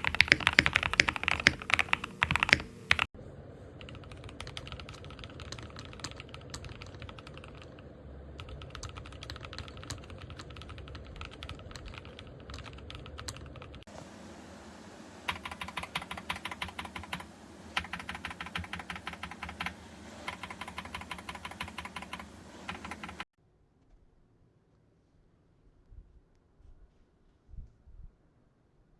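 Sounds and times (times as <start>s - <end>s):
mechanical keyboard typing: 0.0s - 3.1s, 3.8s - 7.8s, 8.4s - 13.9s, 15.3s - 23.2s.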